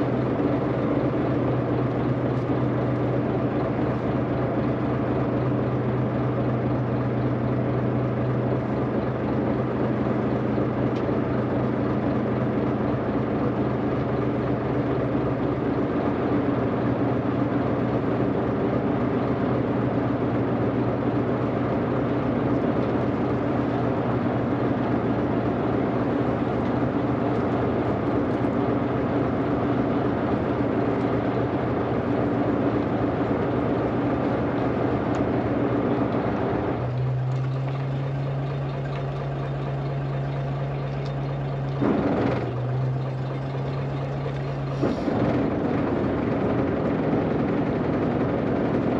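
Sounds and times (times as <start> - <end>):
boat engine humming: 0.0 - 48.9
wind: 0.0 - 48.9
rushing water: 36.8 - 45.6.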